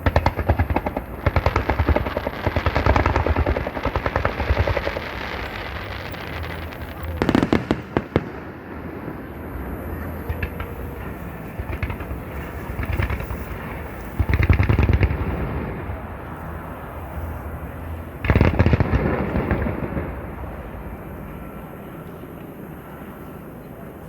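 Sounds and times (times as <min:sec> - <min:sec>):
low firework booms: 0:00.0 - 0:16.3
fireworks crackling and banging: 0:00.0 - 0:24.0.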